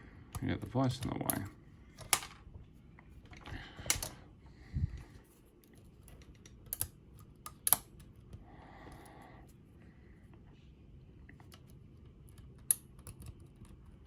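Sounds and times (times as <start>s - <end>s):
lock pick metallic clicks: 6.3s - 8.1s.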